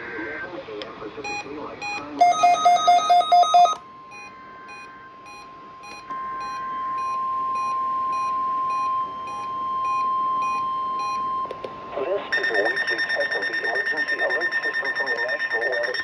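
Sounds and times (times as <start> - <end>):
steady alarm tone: 1.3 - 11.4, 12.3 - 16.0
rapid electronic beeps: 12.3 - 16.0.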